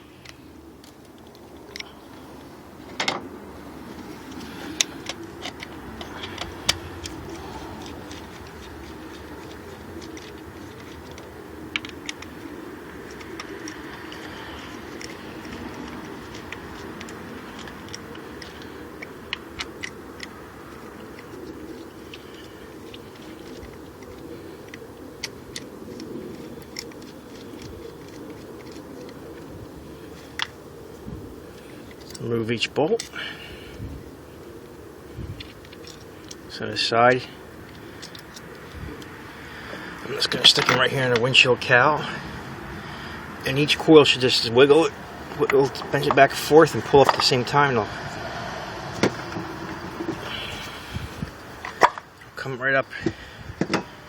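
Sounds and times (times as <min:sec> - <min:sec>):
steady low hum: 0:00.0 - 0:54.0
ratchet clicking and tools rattling: 0:04.0 - 0:30.5.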